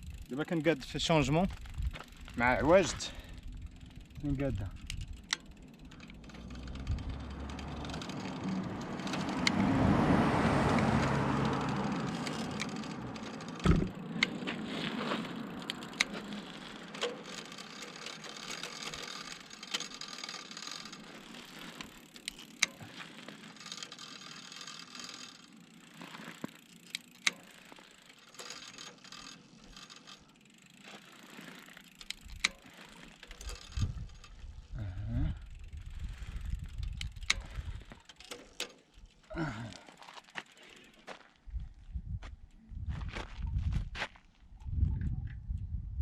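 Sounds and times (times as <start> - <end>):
passing vehicle: 5.4 - 32.1.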